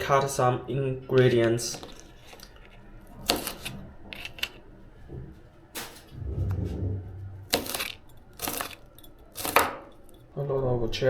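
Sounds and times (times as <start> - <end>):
kitchen utensils clattering: 5.8 - 6.2
low rumble: 6.1 - 8.3.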